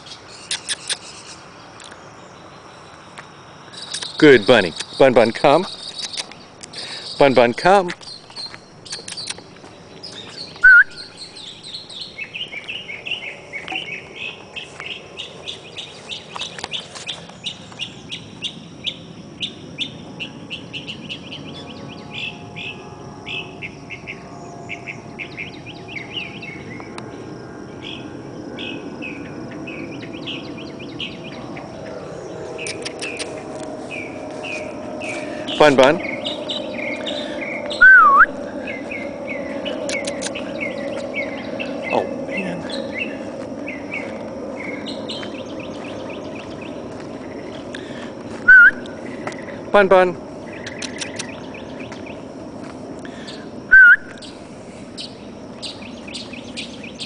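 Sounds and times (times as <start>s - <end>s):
cricket trill: 0.0s - 57.0s
songbird chirping: 0.0s - 57.0s.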